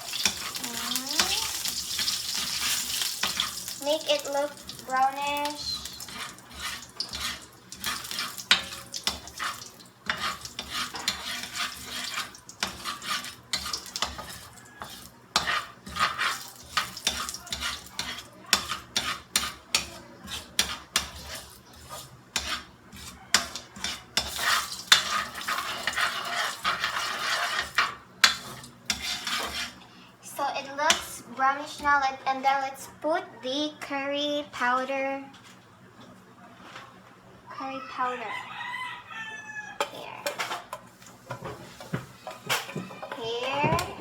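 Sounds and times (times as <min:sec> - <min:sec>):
seeds sizzling in hot oil: 0:00.0 - 0:29.8
utensil scraping in a pan: 0:00.0 - 0:32.0, 0:39.8 - 0:44.0.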